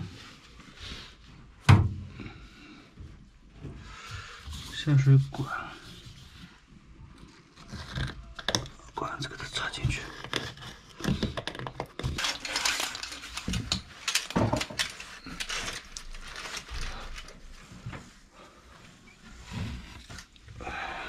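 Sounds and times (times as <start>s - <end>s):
plastic hose scraping and knocking: 3.6s - 18.2s, 19.2s - 20.4s.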